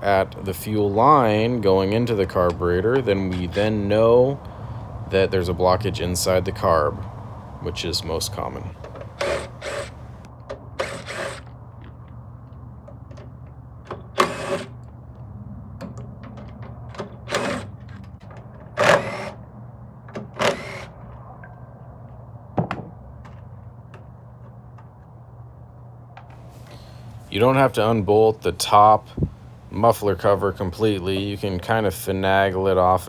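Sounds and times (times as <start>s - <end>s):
steady low hum: 0.0s - 10.3s, 26.3s - 31.6s.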